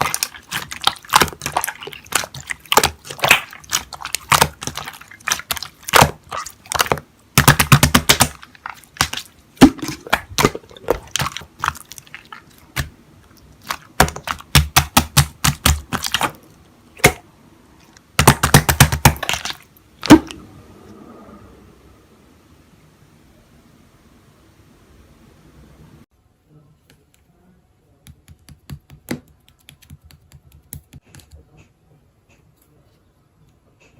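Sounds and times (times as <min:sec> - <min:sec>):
slime squished by hand: 0:00.0 - 0:17.2, 0:18.1 - 0:20.4.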